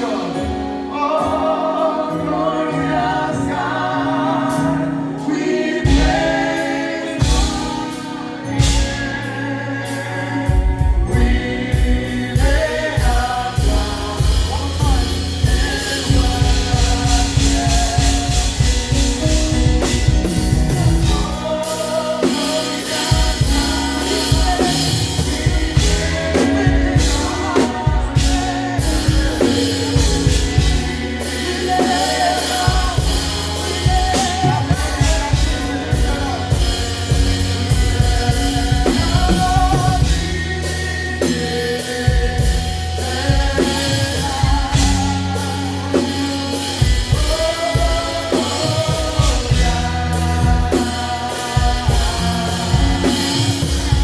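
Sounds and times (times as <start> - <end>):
live gospel band: 0.0 - 54.0
people singing: 0.0 - 54.0
drum kit drumming: 4.5 - 54.0.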